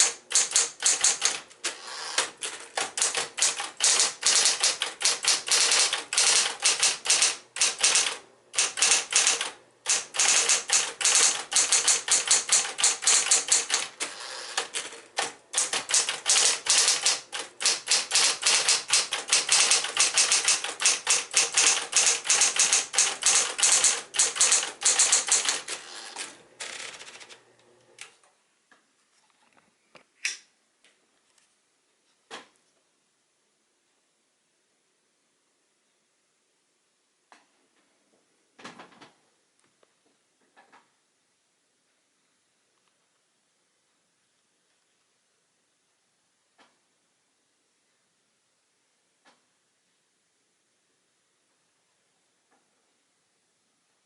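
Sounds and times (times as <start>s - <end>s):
typewriter keystroke clicks: 0.0s - 27.4s
typewriter motor humming: 0.0s - 27.4s.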